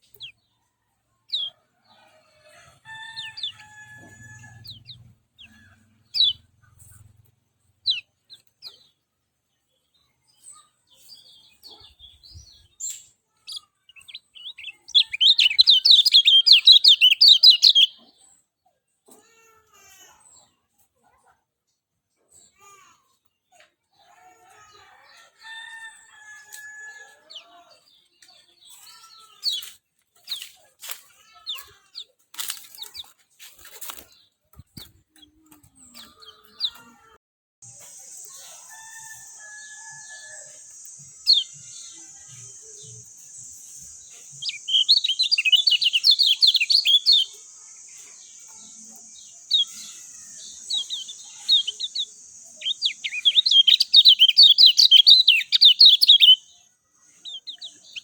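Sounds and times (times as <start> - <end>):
bird chirping and whistling: 14.0 - 18.0, 44.4 - 47.3, 49.5 - 56.4
bird chattering fast: 14.1 - 18.0, 44.3 - 47.3, 50.4 - 56.4.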